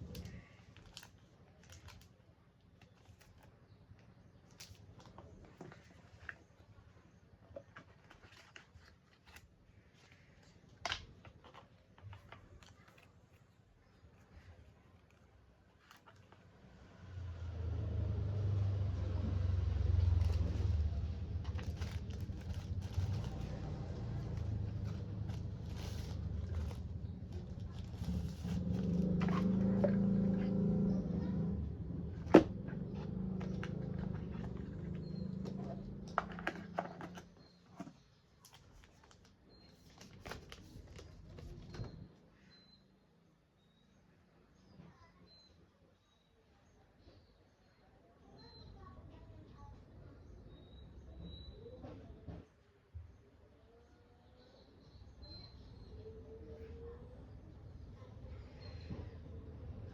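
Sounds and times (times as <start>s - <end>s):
phone and packaging handled: 0.0s - 6.6s, 7.4s - 13.6s, 20.2s - 30.0s, 33.4s - 42.1s
low steady hum: 16.9s - 37.6s.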